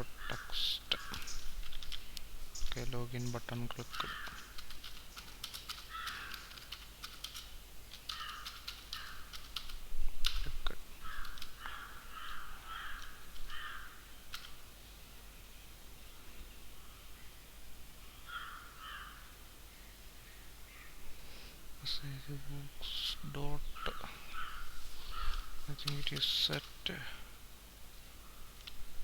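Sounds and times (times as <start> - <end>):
crow cawing: 0.1 - 1.4, 3.8 - 4.6, 5.8 - 6.7, 8.1 - 9.4, 11.0 - 14.1, 18.2 - 19.4, 23.8 - 25.9
keyboard typing: 1.1 - 2.1, 3.5 - 11.7, 14.3 - 14.6.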